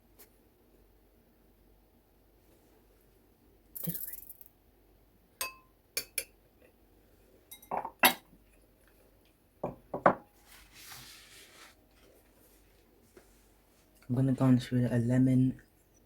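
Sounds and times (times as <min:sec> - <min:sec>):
spoon clinking against a cup: 0:05.4 - 0:06.4, 0:07.5 - 0:08.2
soft hiss: 0:10.3 - 0:16.0.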